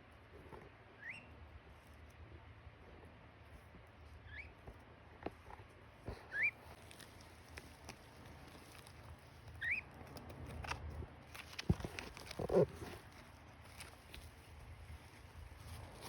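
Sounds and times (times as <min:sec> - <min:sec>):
parakeet chirping: 0:01.0 - 0:01.3, 0:04.2 - 0:04.6, 0:06.3 - 0:06.6, 0:09.6 - 0:09.9.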